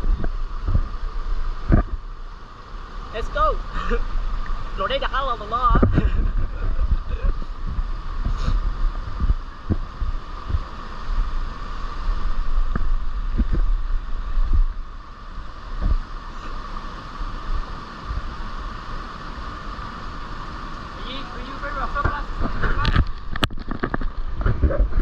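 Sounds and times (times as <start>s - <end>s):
waterfall rushing: 0.0s - 24.9s
wind buffeting microphone: 0.0s - 25.0s
soft thumps: 5.8s - 10.7s, 12.6s - 14.8s.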